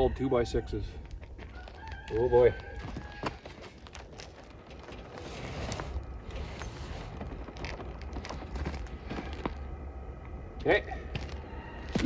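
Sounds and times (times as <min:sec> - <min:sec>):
low rumble: 0:03.8 - 0:12.0
cable roll scraping down planks: 0:04.8 - 0:09.1.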